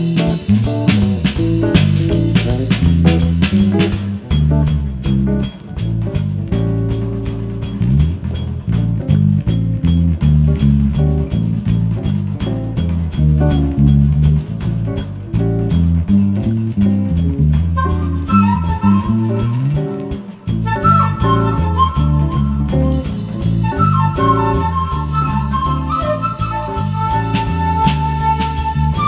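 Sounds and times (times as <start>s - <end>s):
drum kit cymbals ticking: 0.0s - 28.9s
electric bass walking: 0.0s - 29.0s
electric guitar: 0.0s - 29.0s
higher melody line: 1.4s - 3.2s.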